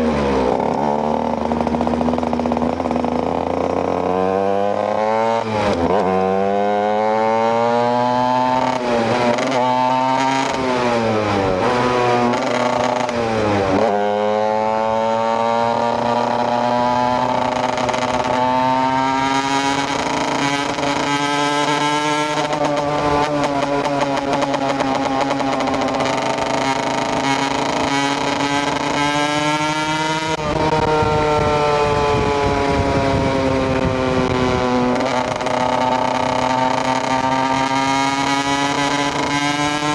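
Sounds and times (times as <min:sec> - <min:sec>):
two-stroke motorcycle engine revving: 0:00.0 - 0:39.9.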